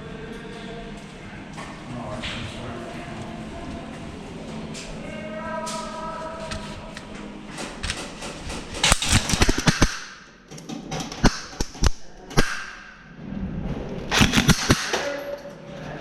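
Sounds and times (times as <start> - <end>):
airsoft guns firing: 8.7 - 10.3, 14.1 - 15.0.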